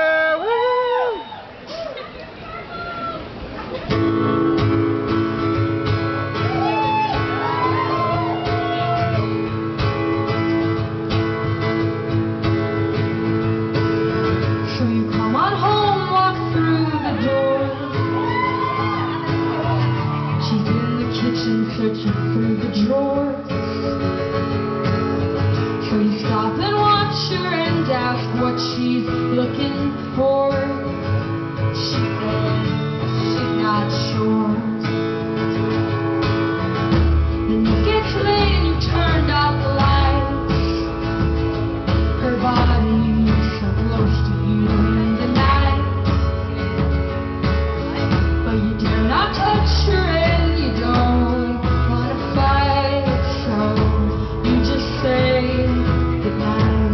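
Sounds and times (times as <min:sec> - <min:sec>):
strummed acoustic guitar: 0:03.7 - 0:56.9
female vocals: 0:14.6 - 0:18.3, 0:20.4 - 0:23.6, 0:25.7 - 0:31.0, 0:31.7 - 0:34.9, 0:37.5 - 0:41.0, 0:42.1 - 0:46.2, 0:48.4 - 0:56.9.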